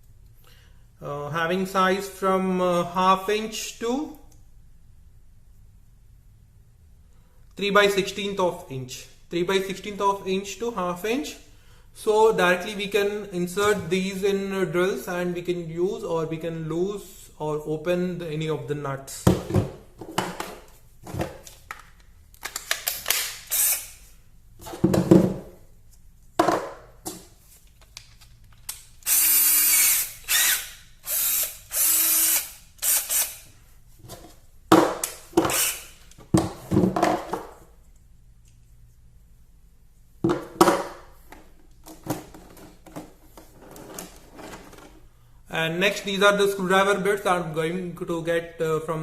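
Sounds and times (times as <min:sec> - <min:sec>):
cordless drill running: 0:23.5 - 0:23.9, 0:29.0 - 0:33.4, 0:35.5 - 0:35.9.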